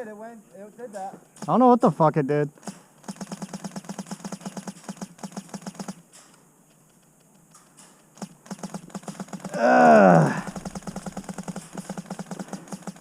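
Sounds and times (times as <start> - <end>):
airsoft gun firing full auto: 2.6 - 6.1, 8.2 - 9.6, 10.2 - 13.0.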